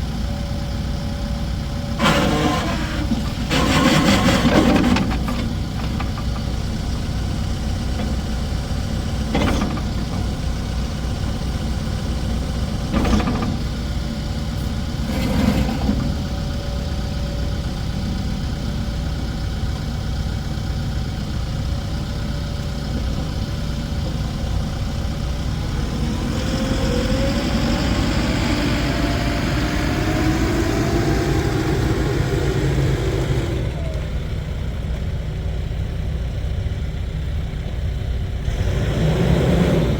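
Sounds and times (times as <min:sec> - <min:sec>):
diesel engine running: 0:00.0 - 0:39.9
rising whine: 0:25.7 - 0:34.6.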